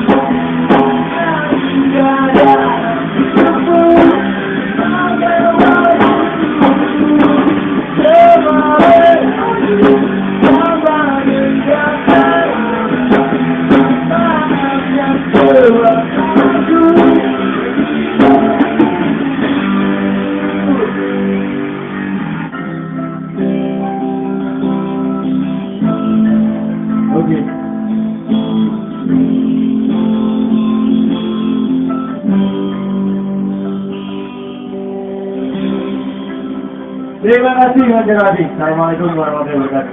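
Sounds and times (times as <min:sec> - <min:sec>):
person singing: 0:00.0 - 0:21.3
live band with guitar: 0:00.0 - 0:39.9.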